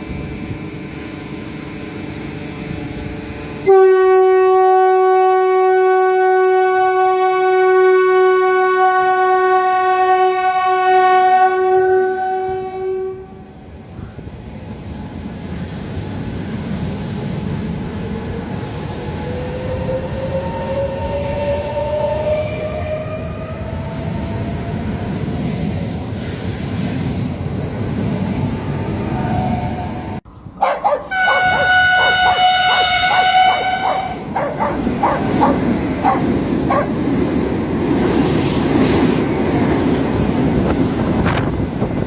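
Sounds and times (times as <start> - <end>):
train rumbling: 0.0 - 42.0
train horn steady note: 3.5 - 13.5, 31.1 - 36.8.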